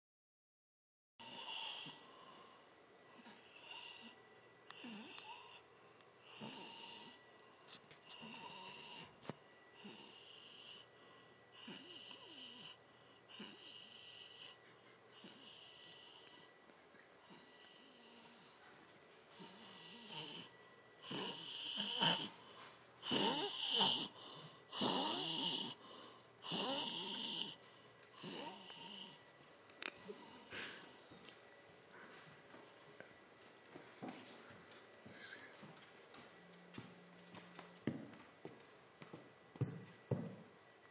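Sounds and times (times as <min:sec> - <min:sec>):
snoring with whistling wheeze: 0:01.2 - 0:02.1, 0:03.1 - 0:05.7, 0:06.3 - 0:07.3, 0:08.1 - 0:10.9, 0:11.5 - 0:14.6, 0:15.2 - 0:16.5, 0:17.2 - 0:18.6, 0:19.3 - 0:22.4, 0:23.0 - 0:25.8, 0:26.4 - 0:27.6, 0:28.2 - 0:29.2.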